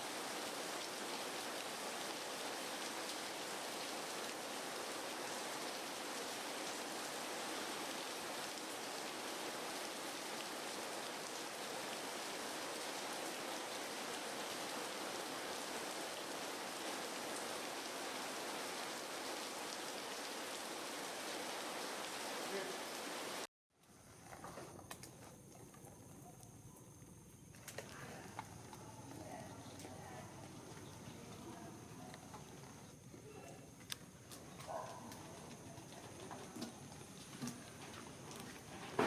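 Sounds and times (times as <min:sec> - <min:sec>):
rain hissing: 0:00.0 - 0:23.5.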